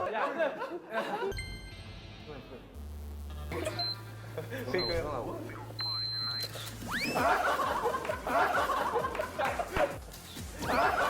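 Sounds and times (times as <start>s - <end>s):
people laughing: 0.0s - 1.4s, 3.5s - 5.5s, 6.8s - 11.0s
background music: 0.7s - 11.0s.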